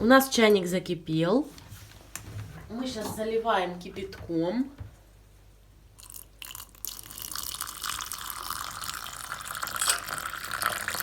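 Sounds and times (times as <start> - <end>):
water pouring into a cup: 6.0 - 11.0.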